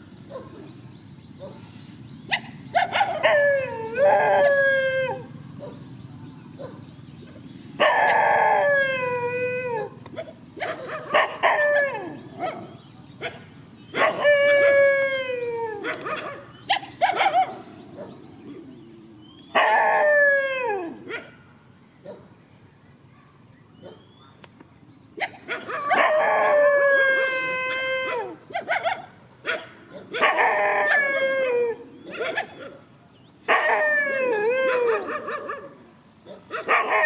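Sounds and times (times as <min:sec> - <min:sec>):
dogs barking: 0:00.2 - 0:00.8, 0:01.4 - 0:08.8, 0:09.7 - 0:14.9, 0:15.8 - 0:18.8, 0:19.5 - 0:20.2, 0:20.8 - 0:22.4, 0:23.1 - 0:24.4, 0:25.2 - 0:27.0, 0:28.0 - 0:37.0
dogs howling and yelping: 0:02.3 - 0:05.9, 0:07.8 - 0:18.9, 0:19.5 - 0:21.3, 0:25.2 - 0:32.9, 0:33.5 - 0:37.0.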